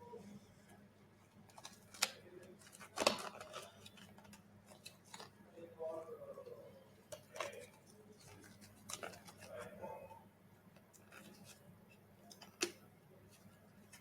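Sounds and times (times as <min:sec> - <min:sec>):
faint steady hum: 0:00.0 - 0:14.0
small clicks and rustles: 0:01.3 - 0:05.4, 0:07.1 - 0:09.8.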